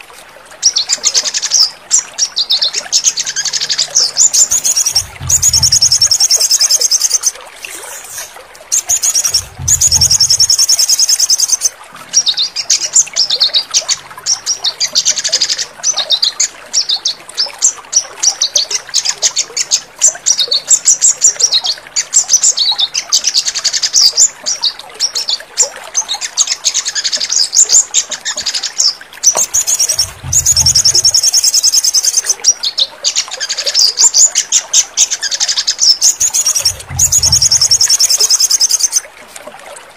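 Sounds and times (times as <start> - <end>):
bird trills and chirps: 0.7 - 17.2, 26.0 - 39.0.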